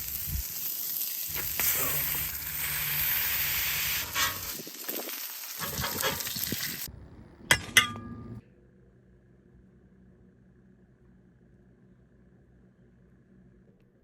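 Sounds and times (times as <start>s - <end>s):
meat sizzling on griddle: 0.0s - 6.9s.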